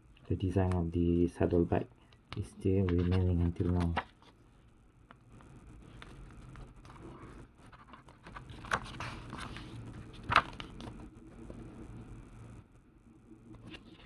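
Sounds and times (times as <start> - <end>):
paper pages rustling and crackling: 2.9 - 4.4, 5.3 - 11.7, 13.6 - 14.0.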